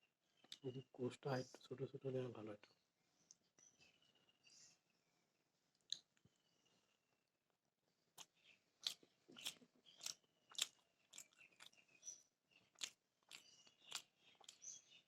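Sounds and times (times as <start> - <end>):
wet mouth clicks and smacks: 5.7 - 6.2, 8.2 - 11.8, 12.8 - 14.6
person chewing food: 5.7 - 6.4, 8.1 - 15.0.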